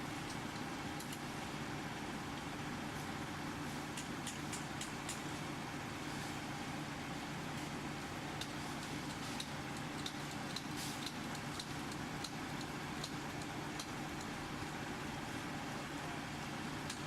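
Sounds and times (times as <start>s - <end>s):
engine running steadily: 0.0s - 17.0s
light ticks: 8.4s - 14.3s.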